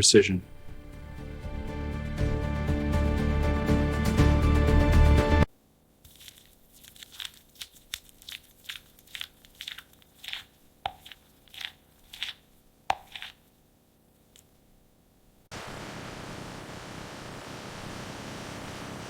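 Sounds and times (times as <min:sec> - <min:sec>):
quiet crunches: 0:06.0 - 0:14.9.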